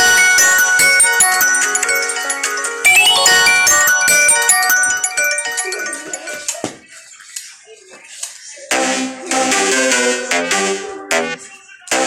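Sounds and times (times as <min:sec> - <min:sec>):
phone ringtone melody: 0:00.0 - 0:06.8.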